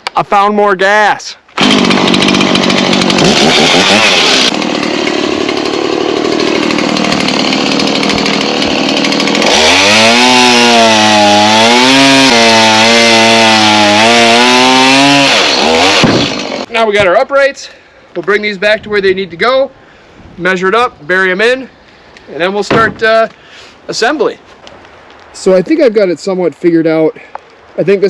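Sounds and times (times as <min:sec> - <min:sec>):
chainsaw cutting wood: 0:01.6 - 0:16.7.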